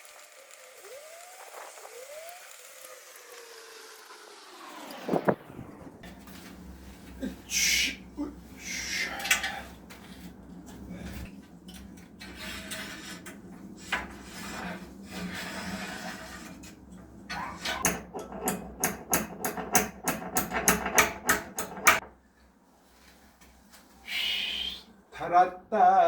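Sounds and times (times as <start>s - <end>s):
scraping and rubbing: 8.4s - 22.0s
rhythmic scraping strokes: 12.1s - 18.9s.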